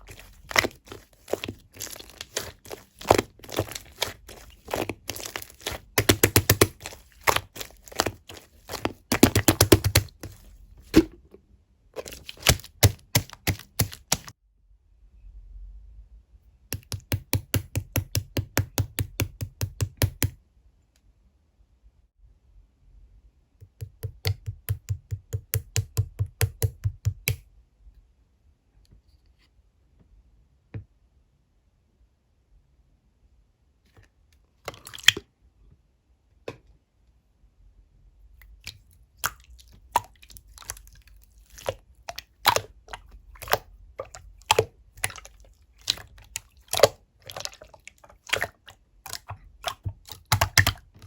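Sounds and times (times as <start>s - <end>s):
slime squishing with sticky pops: 0.0s - 11.1s, 12.0s - 14.3s, 38.4s - 51.0s.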